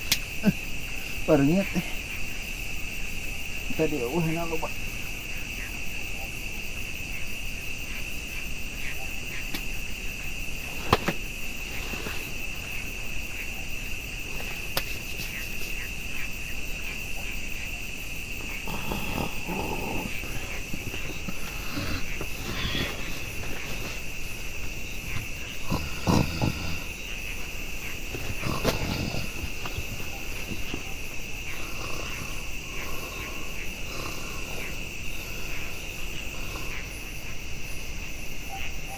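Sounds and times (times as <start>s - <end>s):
sharp click: 0.0s - 0.3s
insects trilling: 0.0s - 38.9s.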